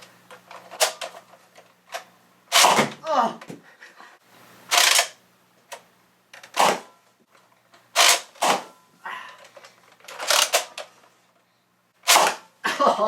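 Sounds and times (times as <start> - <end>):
toy blaster shots: 2.5 - 3.0, 4.7 - 5.2, 6.5 - 6.9, 8.0 - 8.8, 10.2 - 10.8, 12.0 - 12.5.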